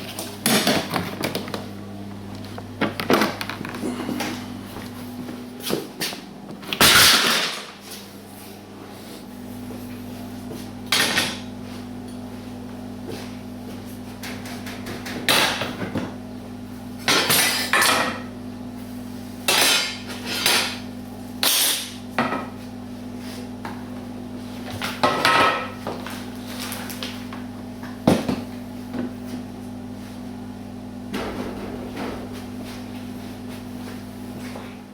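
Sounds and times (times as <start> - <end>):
low electrical hum: 0.0 - 34.9
metallic clanks and knocks: 31.1 - 32.5.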